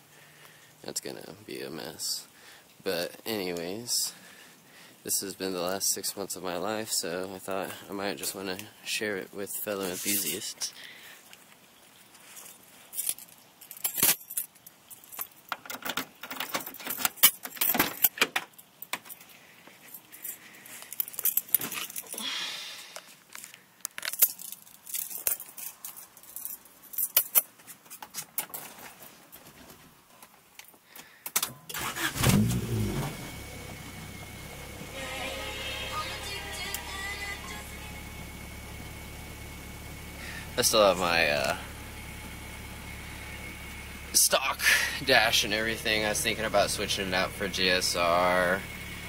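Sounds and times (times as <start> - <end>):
keys jangling: 12.9 - 15.5, 20.0 - 22.2, 24.0 - 27.5
low swooping hum: 32.5 - 48.0.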